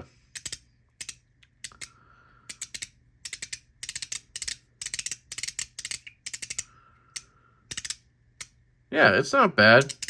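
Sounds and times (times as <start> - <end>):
magnetic fidget metallic clicks: 0.3 - 1.9, 2.5 - 8.6, 9.8 - 10.0.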